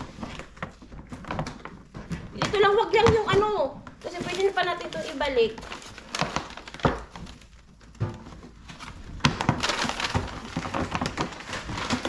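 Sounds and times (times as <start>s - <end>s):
packaging crinkling and tearing: 4.0s - 12.0s.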